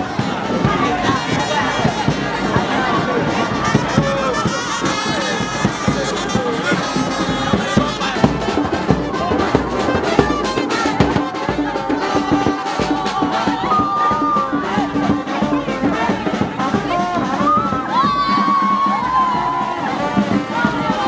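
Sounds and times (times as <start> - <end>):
horns playing a tune: 0.0 - 21.0
steady drum beat: 0.0 - 21.0.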